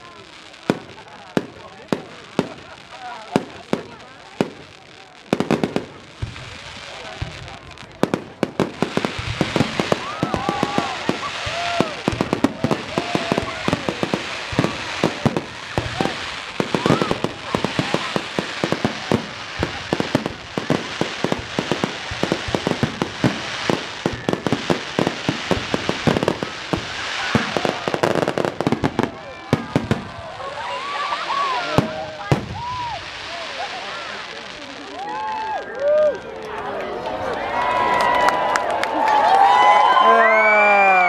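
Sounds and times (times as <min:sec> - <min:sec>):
fireworks whistling: 0:00.0 - 0:35.6
fireworks bangs and crackles: 0:00.0 - 0:37.8.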